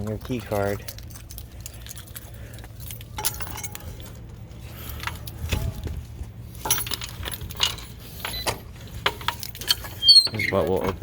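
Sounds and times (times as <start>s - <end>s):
steady low hum: 0.0s - 10.0s
light metallic clinks: 0.5s - 4.2s.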